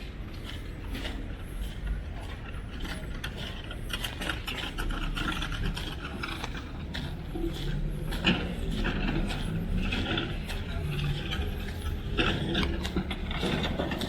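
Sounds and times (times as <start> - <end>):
machinery rumble: 0.0 - 14.0.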